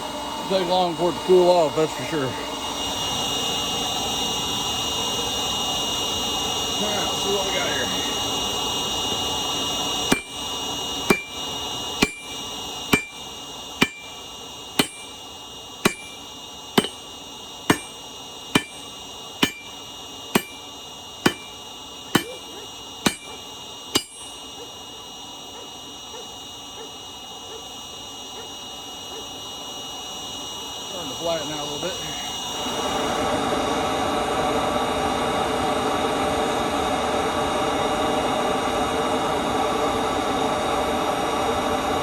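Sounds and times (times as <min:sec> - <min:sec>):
forge blower whine: 0:00.0 - 0:42.0
hammer striking metal on anvil: 0:10.1 - 0:10.5, 0:11.1 - 0:14.2, 0:14.8 - 0:15.2, 0:15.8 - 0:17.1, 0:17.7 - 0:24.6.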